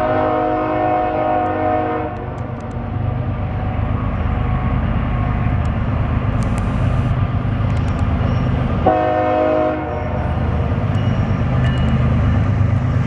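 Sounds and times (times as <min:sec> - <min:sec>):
locomotive air horn blast: 0:00.0 - 0:02.4, 0:08.8 - 0:10.2
freight train rumble: 0:00.0 - 0:13.0.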